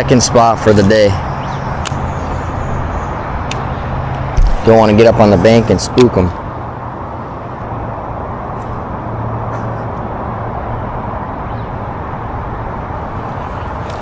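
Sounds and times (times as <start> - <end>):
road traffic rumble: 0.0 - 14.0
low hum: 1.2 - 11.4.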